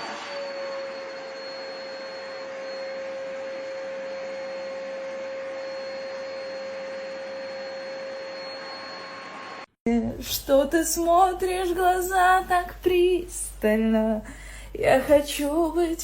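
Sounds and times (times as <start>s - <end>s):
whirring motor with whine: 0.0s - 9.7s.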